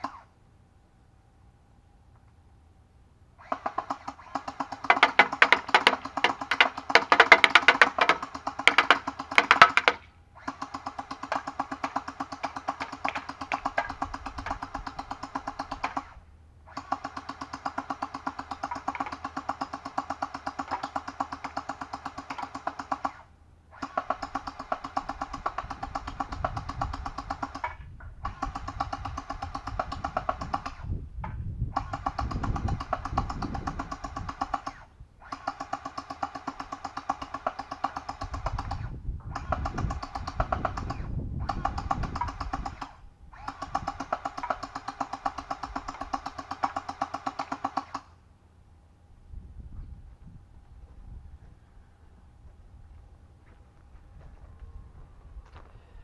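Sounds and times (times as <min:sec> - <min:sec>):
gel blaster firing full-auto: 0:31.8 - 0:48.1.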